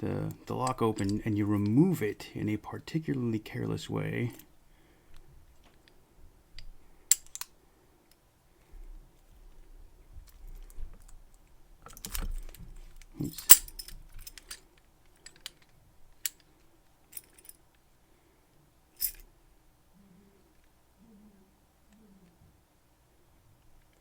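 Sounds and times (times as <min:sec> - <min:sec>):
sharp metal clack: 0:13.2 - 0:13.9
key clicking in padlock: 0:13.3 - 0:14.6.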